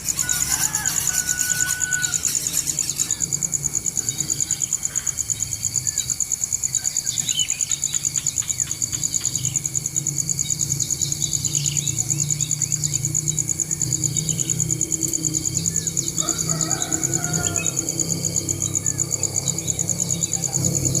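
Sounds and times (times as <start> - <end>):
bird chirps: 0.0 - 3.4, 6.8 - 9.6
insects trilling: 0.0 - 21.0.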